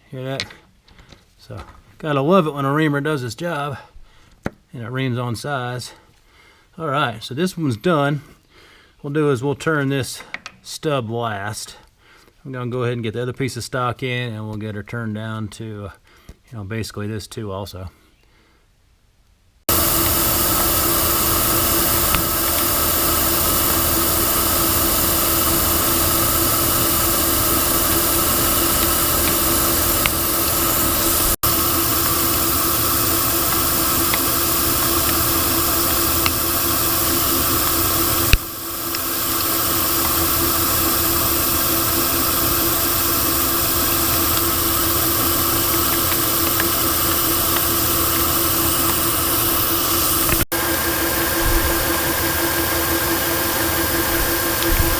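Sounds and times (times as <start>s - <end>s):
lathe turning steel: 19.7s - 54.9s.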